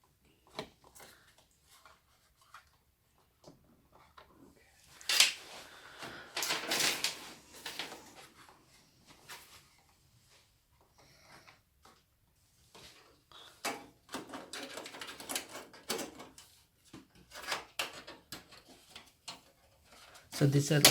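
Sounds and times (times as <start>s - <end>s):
computer parts clicking and rattling: 6.3s - 8.0s, 13.6s - 16.4s, 20.5s - 20.9s.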